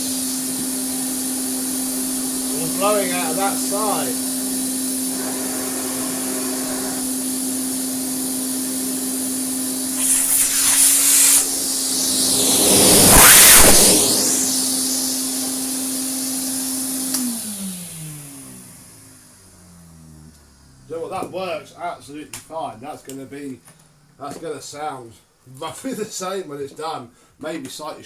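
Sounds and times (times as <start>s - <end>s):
vacuum cleaner running: 0.0s - 20.8s
vacuum motor winding down: 0.0s - 21.3s.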